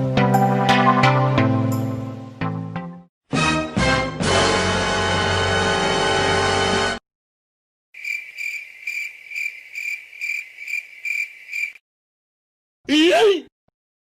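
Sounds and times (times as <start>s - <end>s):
music: 0.0s - 7.0s
crickets chirping: 8.0s - 11.8s.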